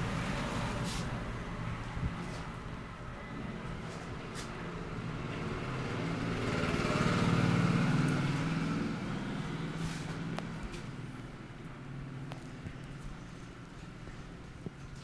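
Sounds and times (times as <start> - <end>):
vehicle engine passing by: 0.0 - 2.5, 3.6 - 11.2.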